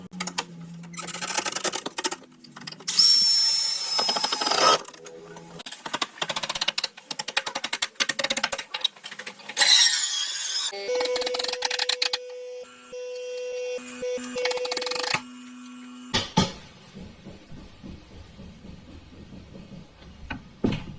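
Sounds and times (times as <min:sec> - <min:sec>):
rapid clicking and ratcheting: 0:01.0 - 0:02.9, 0:05.6 - 0:09.5.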